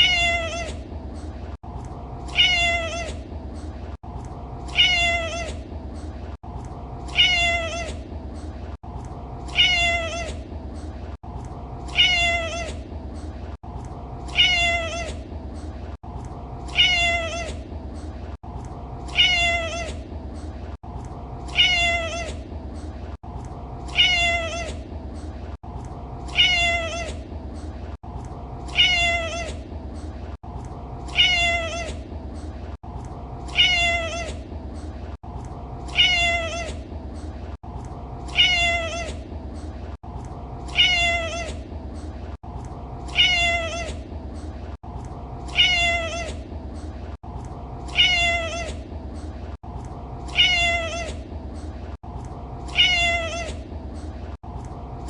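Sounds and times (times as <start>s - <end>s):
cat meowing: 0.0s - 0.8s, 2.3s - 3.2s, 4.7s - 5.6s, 7.1s - 8.0s, 9.5s - 10.4s, 11.9s - 12.8s, 14.3s - 15.2s, 16.7s - 17.6s, 19.1s - 20.0s, 21.5s - 22.4s, 23.9s - 24.8s, 26.3s - 27.2s, 28.7s - 29.6s, 31.1s - 32.0s, 33.5s - 34.4s, 35.9s - 36.8s, 38.3s - 39.2s, 40.7s - 41.6s, 43.1s - 44.0s, 45.5s - 46.4s, 47.9s - 48.8s, 50.3s - 51.2s, 52.7s - 53.6s.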